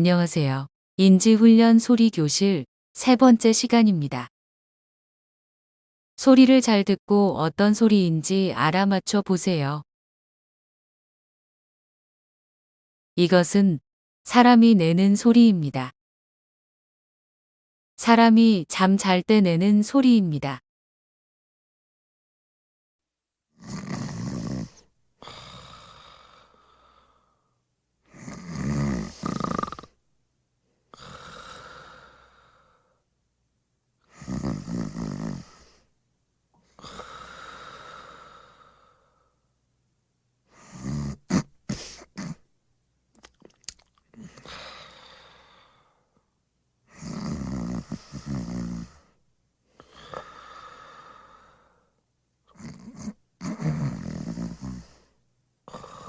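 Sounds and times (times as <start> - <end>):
person snoring: 23.6 - 27.5, 28.1 - 30.0, 30.9 - 33.0, 34.1 - 35.8, 36.6 - 39.4, 40.5 - 42.4, 44.2 - 46.1, 46.9 - 49.2, 49.8 - 56.0
short snorts: 28.1 - 29.9, 34.1 - 35.8, 40.5 - 42.4, 46.9 - 49.1, 49.8 - 51.7, 52.5 - 56.0.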